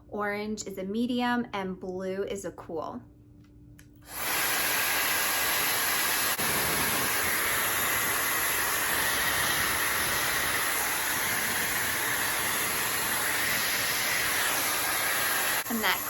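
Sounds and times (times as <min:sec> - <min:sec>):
hair dryer blowing with whine: 0:04.1 - 0:16.0.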